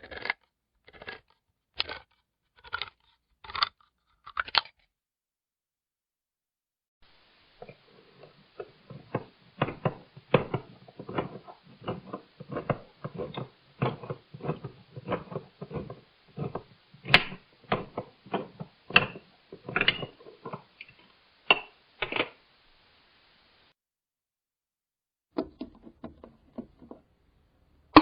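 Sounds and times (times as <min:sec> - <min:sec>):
can opener clicking and crunching: 0:00.0 - 0:04.9, 0:08.6 - 0:20.7.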